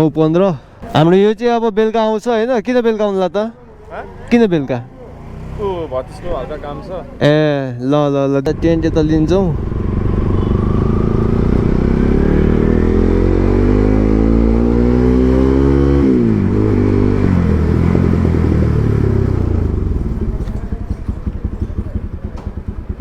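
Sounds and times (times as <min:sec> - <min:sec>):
motorcycle engine revving: 0:03.9 - 0:07.6, 0:08.4 - 0:23.0.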